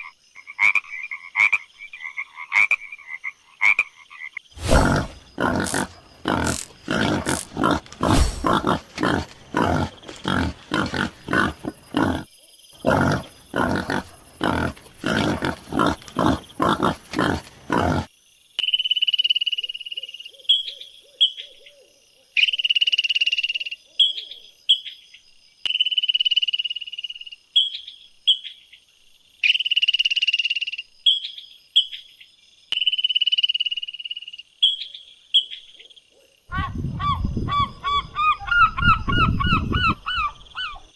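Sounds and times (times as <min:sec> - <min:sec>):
harsh croaking pulses: 0:04.6 - 0:18.1.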